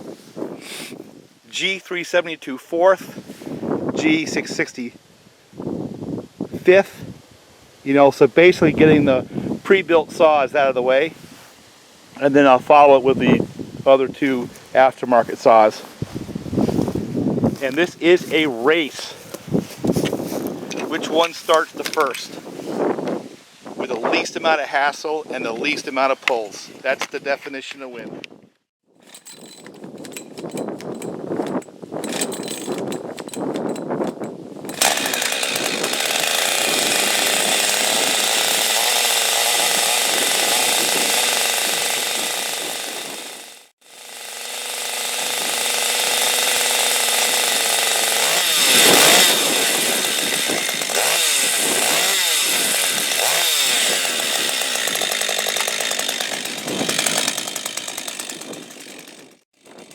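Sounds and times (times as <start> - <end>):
chainsaw engine running: 15.0 - 22.2, 29.1 - 59.9
chainsaw being pull-started: 15.8 - 22.3, 29.0 - 59.9.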